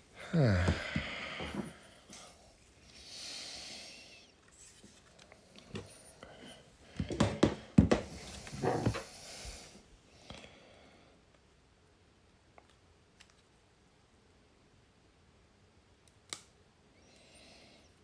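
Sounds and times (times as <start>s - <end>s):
breathy hiss: 0.0s - 4.4s, 8.1s - 11.2s.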